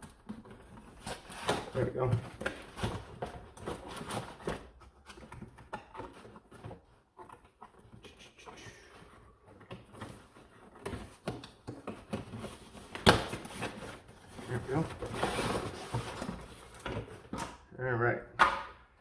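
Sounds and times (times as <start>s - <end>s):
packaging rustling: 8.8s - 17.4s.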